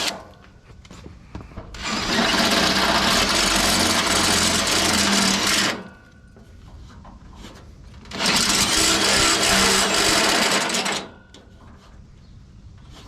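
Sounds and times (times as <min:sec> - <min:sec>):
electric drill cutting sheet metal: 0:01.8 - 0:05.9, 0:08.1 - 0:11.2.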